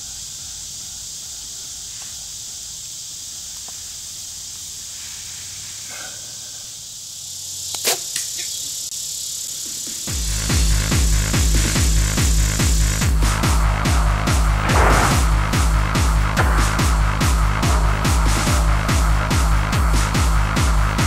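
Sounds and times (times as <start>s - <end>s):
insects hissing: 0.0s - 21.0s
electronic music with heavy beat: 9.7s - 21.0s
bow shot snap: 13.2s - 19.5s.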